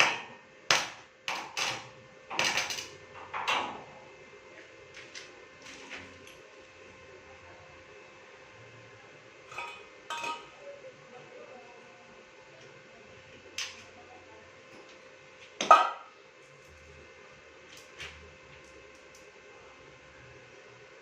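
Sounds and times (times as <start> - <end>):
faint steady hum: 0.0 - 21.0
hard objects clanking together: 9.5 - 10.5.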